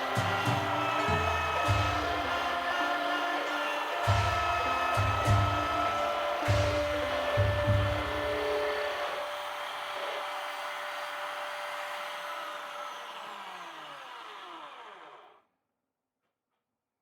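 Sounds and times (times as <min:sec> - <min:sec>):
power tool motor spinning down: 0:03.6 - 0:15.4.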